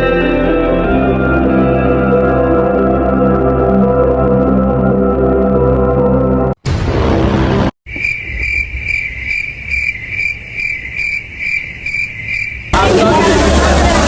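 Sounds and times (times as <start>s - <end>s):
insect chirping trill: 7.9s - 12.8s
rushing noise: 12.7s - 14.0s.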